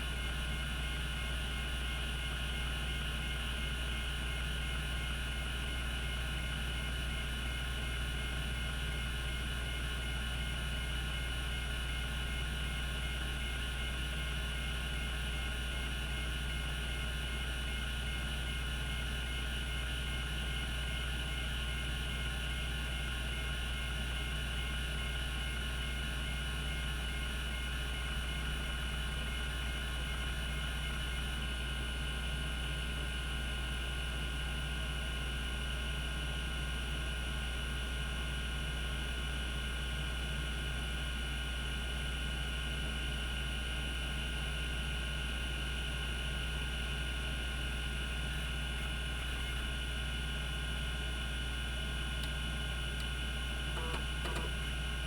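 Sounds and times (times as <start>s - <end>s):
hard disk spinning hum and whine: 0.0s - 55.0s.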